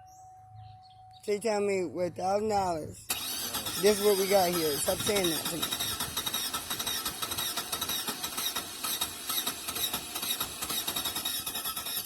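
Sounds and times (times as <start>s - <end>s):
car engine running: 2.4s - 12.0s.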